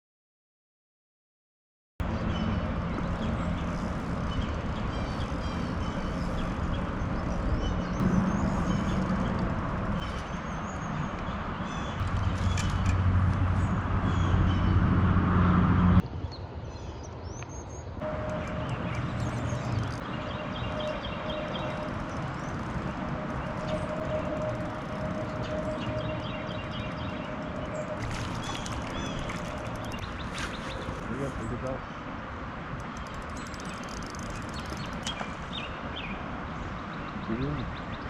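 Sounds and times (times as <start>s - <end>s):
birds chirping: 2.0s - 14.9s, 16.2s - 38.0s
motor hum: 2.8s - 16.0s, 18.0s - 31.4s
noisy rush: 18.0s - 31.5s.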